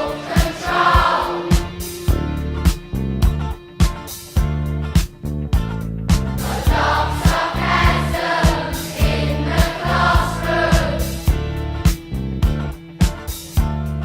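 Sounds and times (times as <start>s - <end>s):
wordless voices singing in harmony: 0.0s - 2.1s, 6.3s - 11.3s
music with drum beat and bass: 0.0s - 14.0s.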